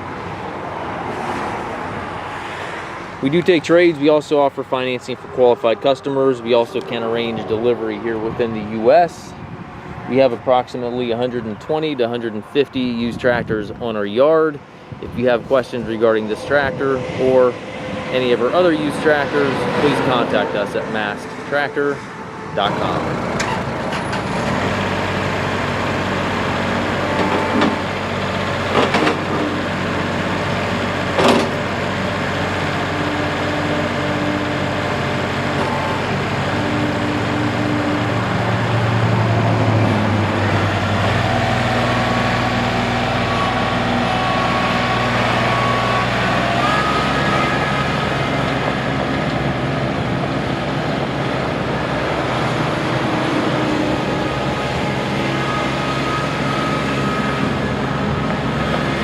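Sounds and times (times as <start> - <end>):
diesel engine running: 2.0 - 59.0.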